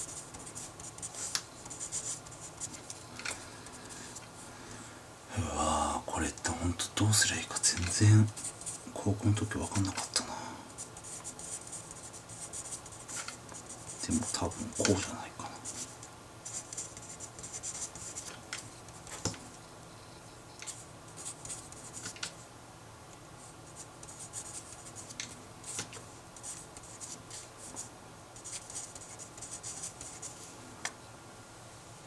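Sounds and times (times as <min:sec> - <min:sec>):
pen scratching on paper: 0:00.0 - 0:02.8, 0:10.8 - 0:18.3, 0:20.7 - 0:22.2, 0:23.7 - 0:27.8, 0:28.4 - 0:30.4.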